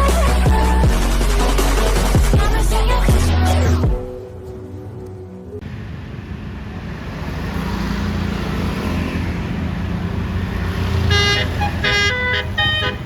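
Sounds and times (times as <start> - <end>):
bus engine and road noise: 0.0 - 13.0
musical air horn: 11.1 - 13.0.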